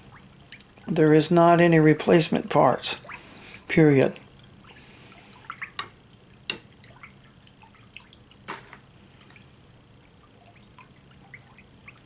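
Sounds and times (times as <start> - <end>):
liquid dripping into container: 0.0 - 1.0, 4.2 - 12.0.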